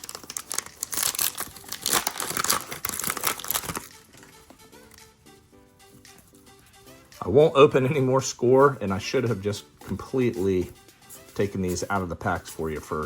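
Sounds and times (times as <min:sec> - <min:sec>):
card pack wrappers crinkling: 0:00.0 - 0:05.0
soft background music: 0:00.0 - 0:13.0.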